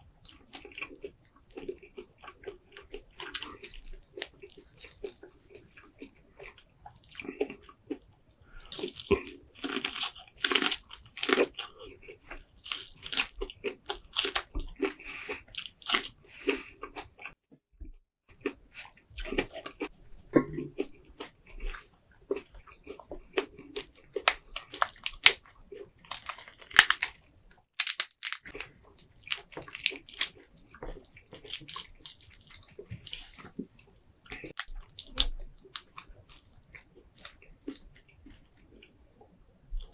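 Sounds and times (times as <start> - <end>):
close-miked chewing: 0.2 - 17.4, 18.4 - 39.9.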